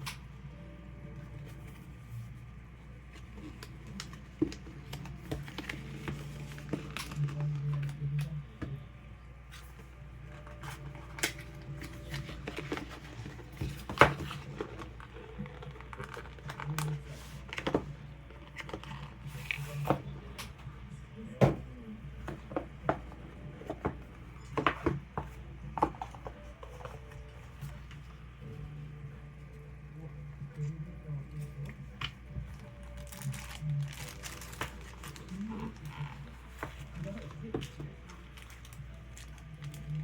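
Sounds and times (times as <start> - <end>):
hands handling packaging: 3.1 - 8.2, 9.5 - 20.0, 31.4 - 40.0.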